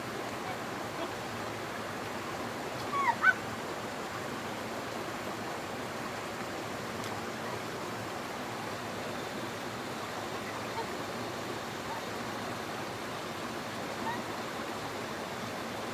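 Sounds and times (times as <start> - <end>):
stream water running: 0.0 - 15.9.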